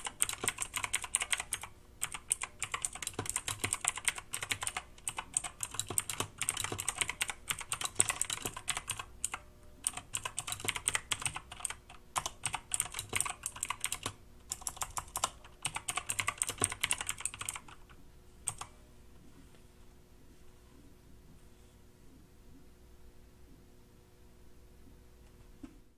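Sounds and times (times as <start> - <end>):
mechanical keyboard typing: 0.0 - 18.7.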